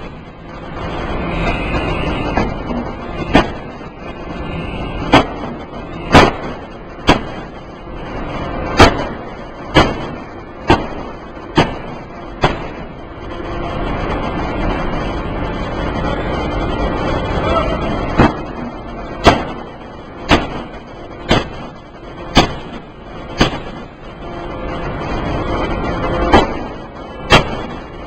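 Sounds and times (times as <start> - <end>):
machinery noise: 0.0 - 28.0
forging hammer striking metal: 5.1 - 7.5, 8.8 - 12.8, 18.0 - 21.7, 22.3 - 22.8, 23.4 - 23.9, 27.3 - 27.8.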